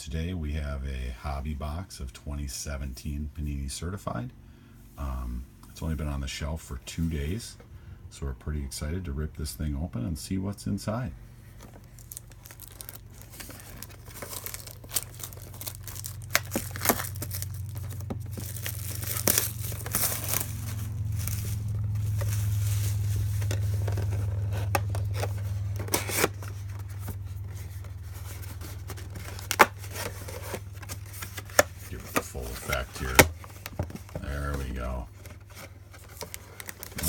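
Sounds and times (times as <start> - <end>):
low steady hum: 0.0 - 37.0
plastic wrapping tearing and crinkling: 11.7 - 37.0.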